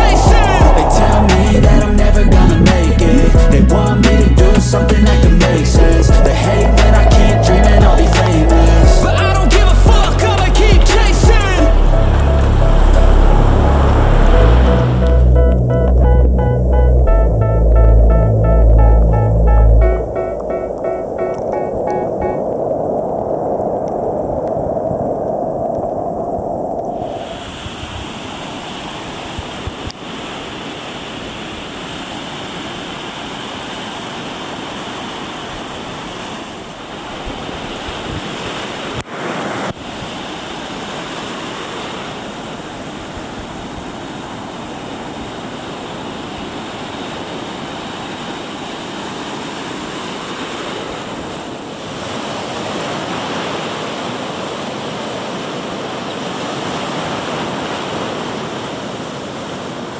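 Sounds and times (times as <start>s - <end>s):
wind on microphone: 0.0s - 39.0s
ocean surf breaking: 0.0s - 59.9s.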